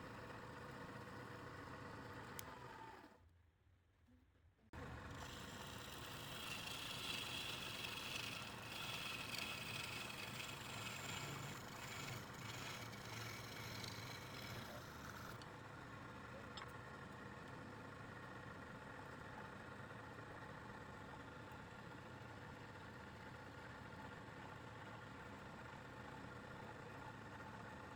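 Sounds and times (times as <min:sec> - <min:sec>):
wood lathe running: 0:05.1 - 0:15.4.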